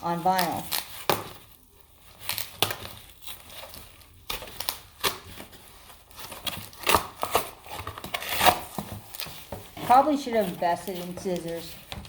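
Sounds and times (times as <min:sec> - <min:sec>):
packaging being torn open: 0:06.2 - 0:09.2.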